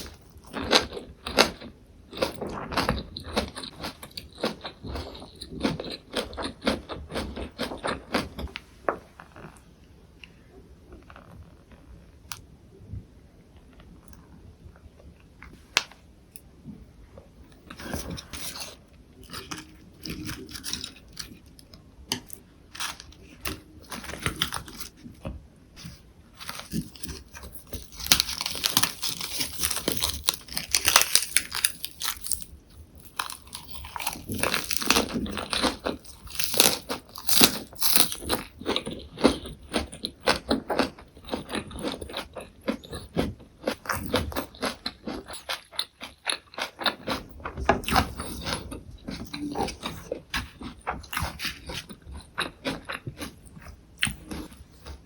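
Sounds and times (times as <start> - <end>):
crisp chewing of leaves: 17.7 - 21.8, 22.7 - 25.2, 25.8 - 55.0.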